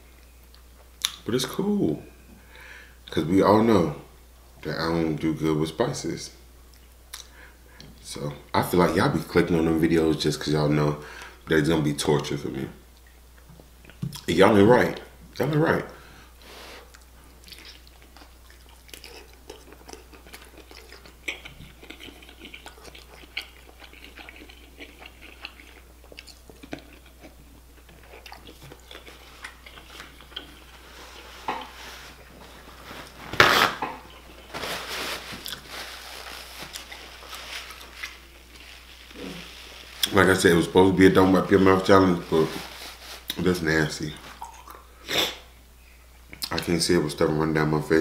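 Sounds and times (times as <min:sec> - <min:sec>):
wet chewing mouth sounds: 0:16.9 - 0:32.3.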